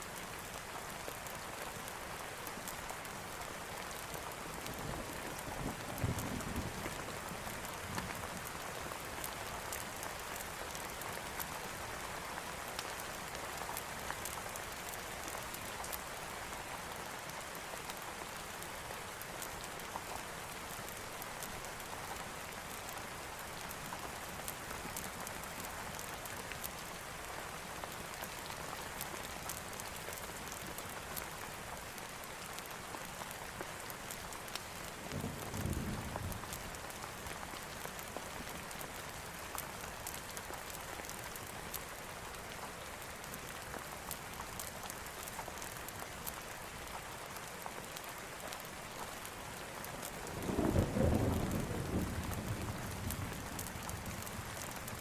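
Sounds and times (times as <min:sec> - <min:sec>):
heavy rain falling: 0:00.0 - 0:55.0
distant thunder rumble: 0:50.4 - 0:54.6.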